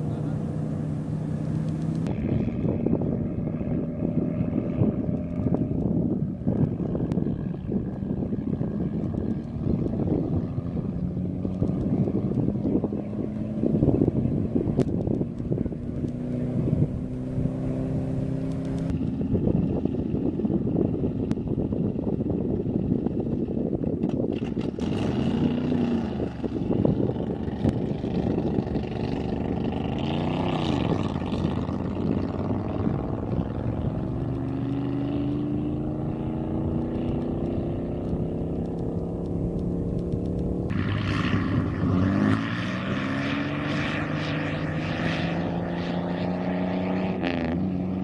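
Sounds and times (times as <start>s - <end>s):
racing engines revving: 0.0s - 2.6s, 11.4s - 18.9s, 28.3s - 48.0s.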